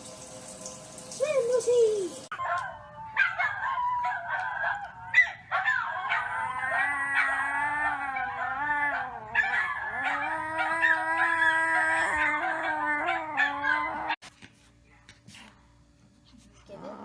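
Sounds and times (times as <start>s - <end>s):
dog howling: 2.3s - 14.2s.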